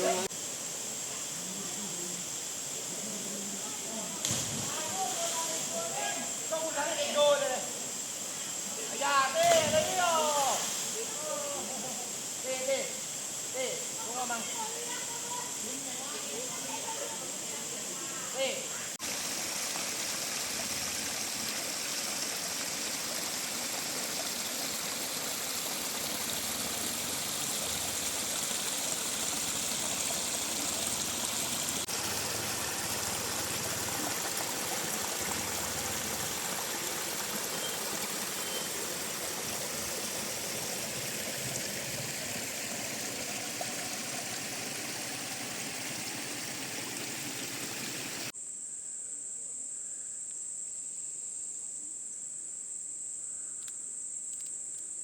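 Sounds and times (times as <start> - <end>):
insects buzzing: 0.0 - 55.0
waterfall rushing and splashing: 19.0 - 48.3.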